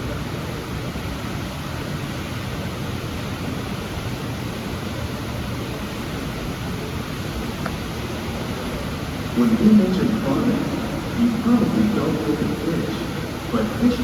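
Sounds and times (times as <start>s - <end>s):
water rushing: 8.0s - 14.0s.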